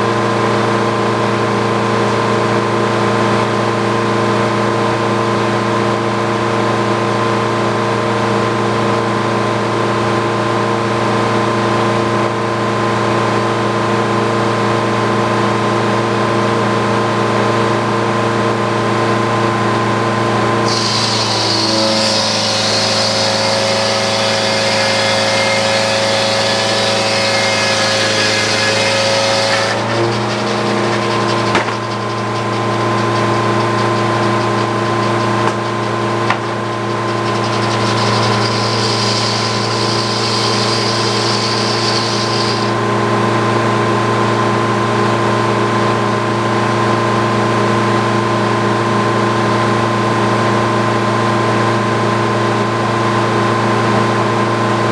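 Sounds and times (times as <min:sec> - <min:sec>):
sawmill engine drone: 0:16.4 - 0:48.0
saw blade cutting log: 0:20.6 - 0:43.2
short knocks: 0:29.9 - 0:42.6.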